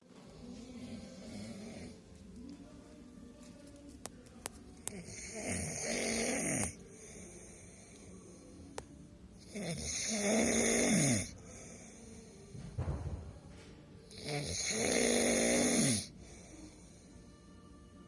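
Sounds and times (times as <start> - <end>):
person snoring: 4.9 - 7.9, 9.4 - 11.9, 14.1 - 16.9.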